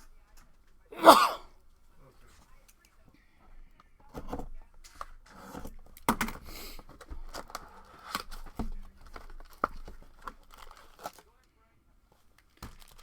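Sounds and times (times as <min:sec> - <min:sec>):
packaging tearing and crinkling: 0:07.2 - 0:11.2, 0:12.4 - 0:13.0.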